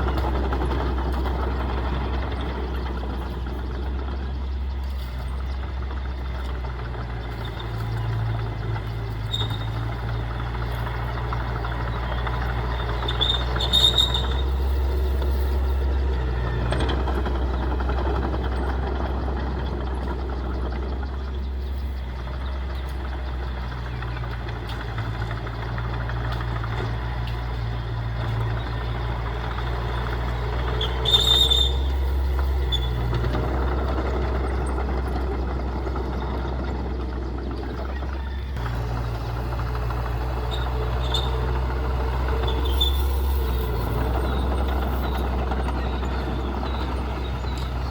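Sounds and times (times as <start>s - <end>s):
bulldozer diesel engine: 0.0s - 47.9s
high squeaks: 12.3s - 15.8s, 29.9s - 33.2s, 40.0s - 47.9s.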